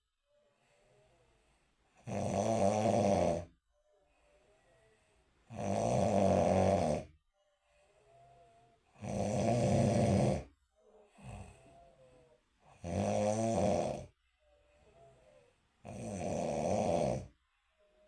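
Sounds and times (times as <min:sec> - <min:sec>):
soft breaths with faint whistle: 0:00.0 - 0:02.0, 0:03.6 - 0:05.8, 0:07.2 - 0:13.2, 0:14.1 - 0:16.1, 0:16.7 - 0:18.0
person snoring: 0:02.0 - 0:03.6, 0:05.4 - 0:07.2, 0:07.9 - 0:14.2, 0:14.8 - 0:17.4.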